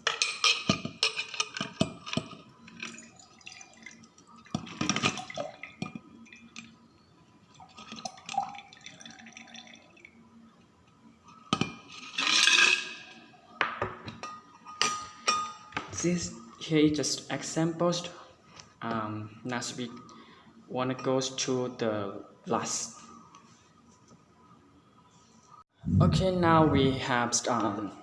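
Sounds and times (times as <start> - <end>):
liquid pouring into a glass: 2.8 - 6.6, 7.6 - 10.2.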